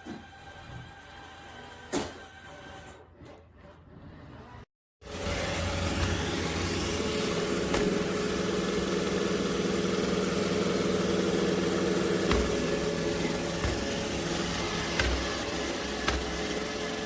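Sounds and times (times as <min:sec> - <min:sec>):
robot vacuum running: 0:05.0 - 0:17.0.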